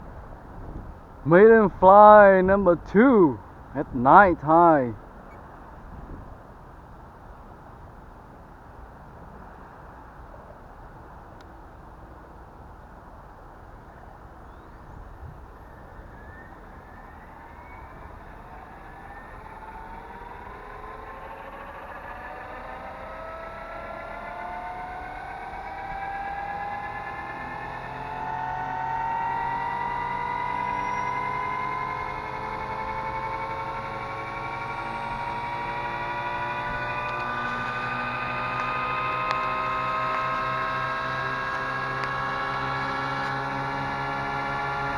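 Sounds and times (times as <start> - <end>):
model helicopter rotor spooling up: 15.7 - 44.9.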